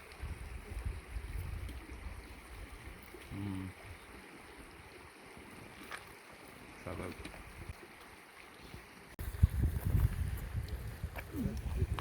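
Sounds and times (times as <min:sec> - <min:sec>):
stream water running: 0:00.0 - 0:12.0
wind buffeting microphone: 0:00.2 - 0:02.9, 0:09.2 - 0:12.0.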